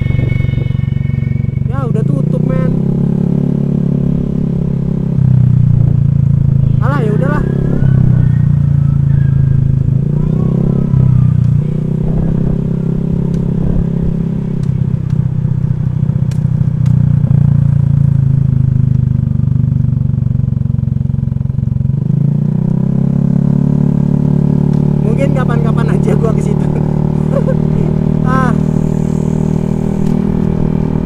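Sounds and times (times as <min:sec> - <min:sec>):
scooter engine running: 0:01.6 - 0:31.0
light ticks: 0:16.2 - 0:17.0.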